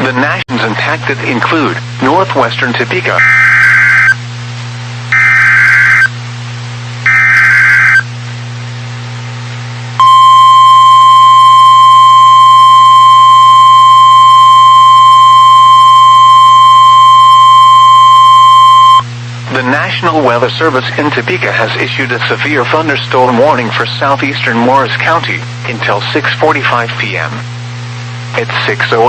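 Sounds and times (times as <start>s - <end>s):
harsh buzzing data chirps: 3.2s - 4.2s, 5.1s - 6.2s, 7.0s - 8.1s, 10.0s - 19.1s
steady alarm tone: 3.2s - 4.2s, 5.1s - 6.1s, 7.0s - 8.1s, 10.0s - 19.0s.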